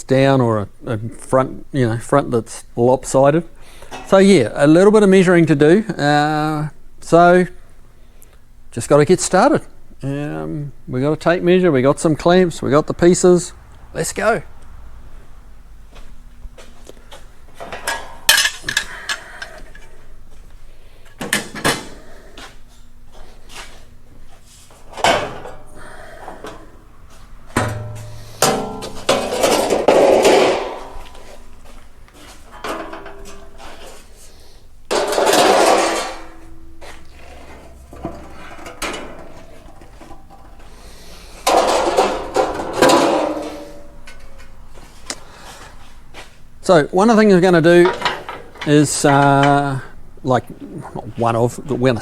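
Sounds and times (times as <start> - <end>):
metal panels clanking: 17.3 - 20.2, 24.8 - 34.2, 34.8 - 50.6
metal panels scraping: 27.1 - 31.5, 32.2 - 46.5, 47.6 - 49.7.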